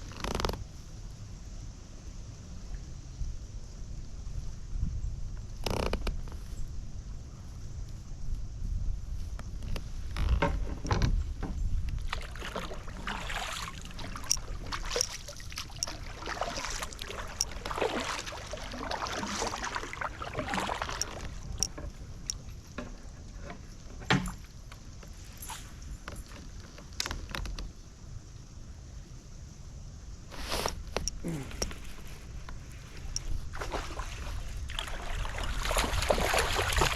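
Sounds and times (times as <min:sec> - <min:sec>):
paddle splashing water: 0:11.9 - 0:25.9, 0:30.3 - 0:36.9.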